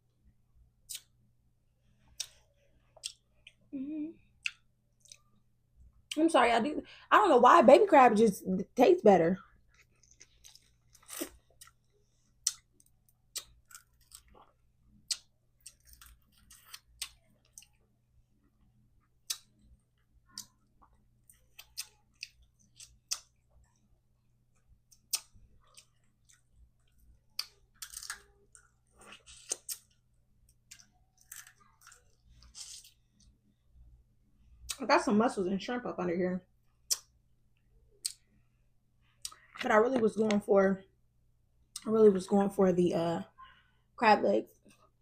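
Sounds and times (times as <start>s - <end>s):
quiet chewing: 1.9s - 6.2s, 9.4s - 33.5s.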